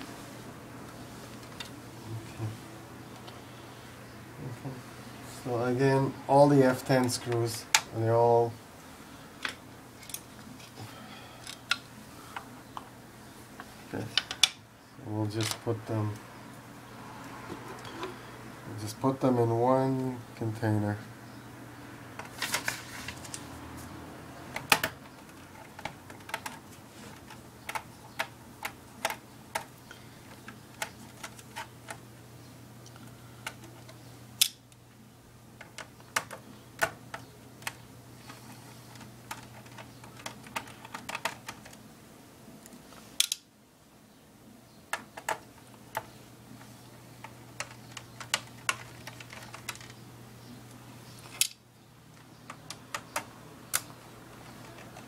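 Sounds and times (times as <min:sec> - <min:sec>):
steady low hum: 0:00.0 - 0:55.0
plastic laptop parts handled: 0:22.2 - 0:23.5, 0:24.6 - 0:29.7, 0:30.3 - 0:32.0, 0:35.6 - 0:41.8, 0:47.2 - 0:50.0.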